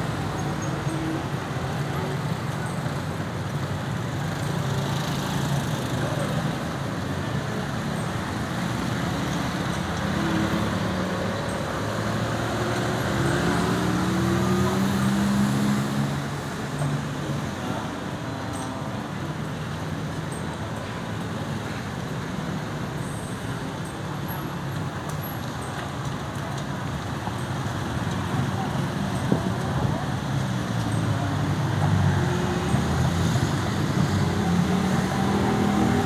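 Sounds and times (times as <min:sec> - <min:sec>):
tyres on road: 0:00.0 - 0:36.0
vehicle engines running: 0:00.0 - 0:36.0
loud vehicle passing: 0:31.3 - 0:36.0.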